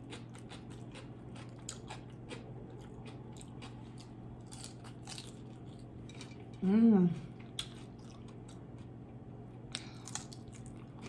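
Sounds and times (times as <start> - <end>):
crunchy chewing: 0.0 - 6.5, 7.4 - 8.9, 9.6 - 11.0.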